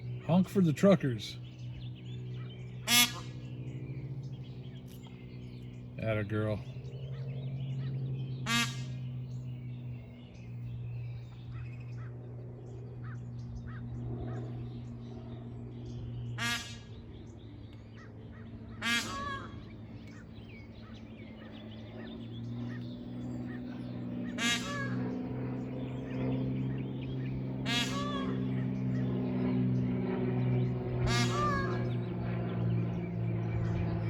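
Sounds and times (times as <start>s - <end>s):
steady low hum: 0.0s - 34.0s
peahen honking calls: 2.8s - 3.4s, 8.4s - 9.0s, 16.4s - 16.9s, 18.8s - 19.6s, 24.4s - 25.0s, 27.6s - 28.4s, 31.0s - 31.9s.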